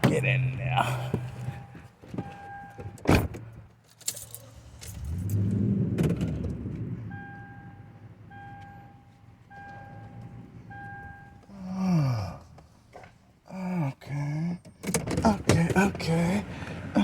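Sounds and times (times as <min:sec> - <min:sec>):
vehicle warning chime beeping: 0:00.2 - 0:03.2, 0:07.0 - 0:11.6
keys jangling: 0:03.9 - 0:05.4.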